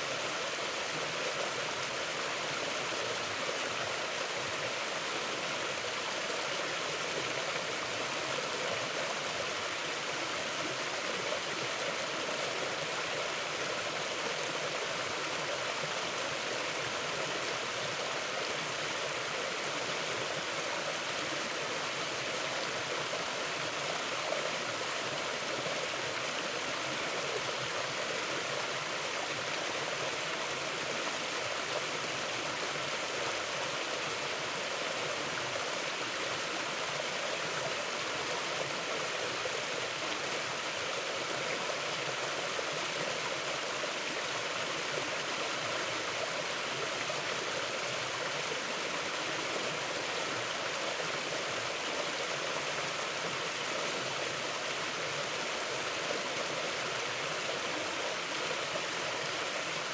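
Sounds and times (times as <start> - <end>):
river flowing over rocks: 0.0 - 59.9.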